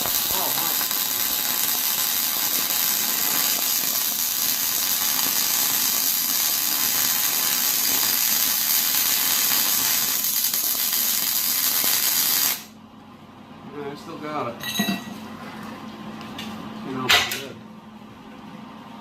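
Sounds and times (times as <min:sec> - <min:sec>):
arc welding hiss: 0:00.0 - 0:12.8.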